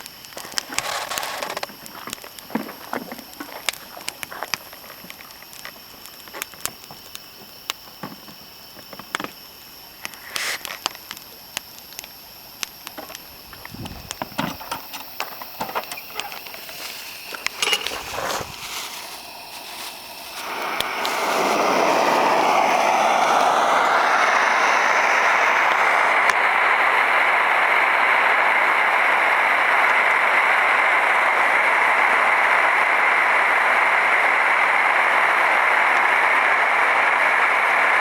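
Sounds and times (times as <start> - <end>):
wood fire crackling and popping: 0.0 - 38.0.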